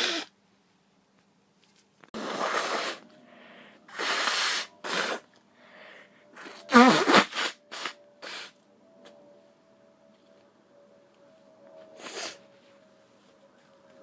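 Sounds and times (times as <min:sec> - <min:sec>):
faint breaths: 0:02.2 - 0:04.6, 0:05.2 - 0:06.6.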